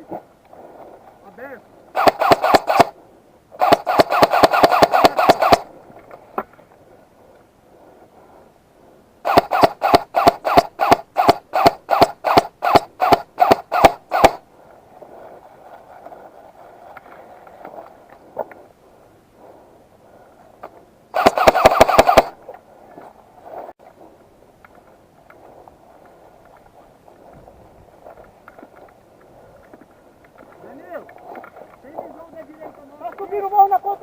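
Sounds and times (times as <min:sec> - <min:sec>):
airsoft gun firing: 0:02.0 - 0:03.0, 0:03.6 - 0:05.7, 0:09.2 - 0:14.4, 0:21.2 - 0:22.4.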